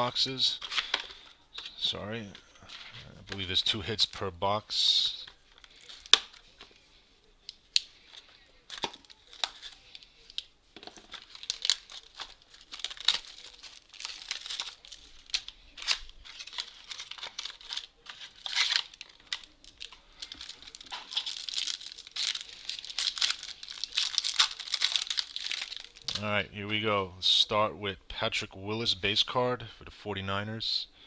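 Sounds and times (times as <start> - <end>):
wrapper tearing and crinkling: 5.5 - 6.5, 8.7 - 26.3
packaging clicks: 8.7 - 26.2.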